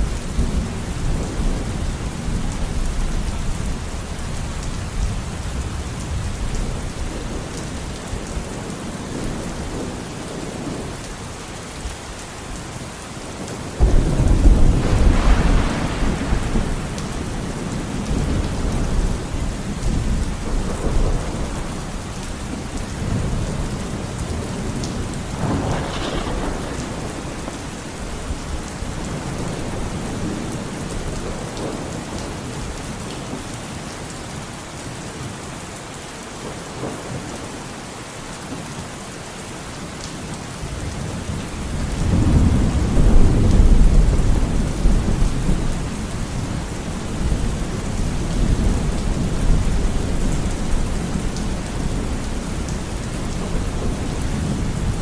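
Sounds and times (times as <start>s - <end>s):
steady rain: 0.0s - 55.0s
thunder crack: 13.8s - 20.0s, 25.4s - 27.7s
rolling thunder: 13.8s - 32.0s, 41.6s - 55.0s.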